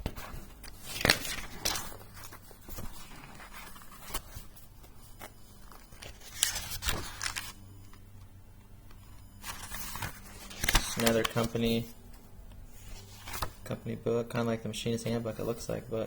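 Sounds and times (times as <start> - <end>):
book pages rustling: 0.0 - 8.0, 8.9 - 12.0, 12.7 - 13.7.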